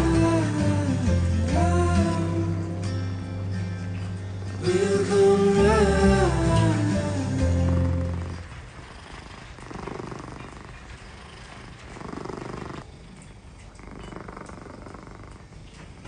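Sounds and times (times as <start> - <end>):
cat purring: 4.3 - 16.0.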